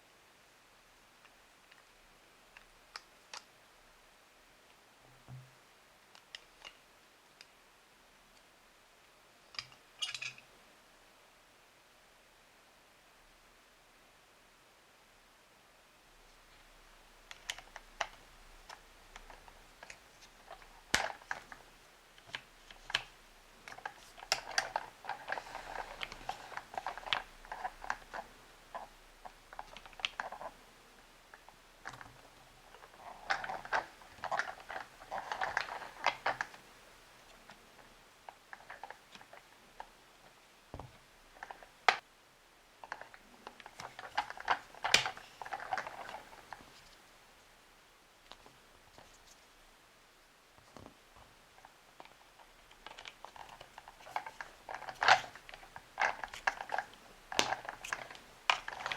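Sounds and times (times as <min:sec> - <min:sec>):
plastic toy parts clicking and rattling: 0:17.3 - 0:21.6, 0:22.2 - 0:30.5, 0:31.4 - 0:36.6, 0:42.8 - 0:46.7, 0:52.0 - 0:58.9.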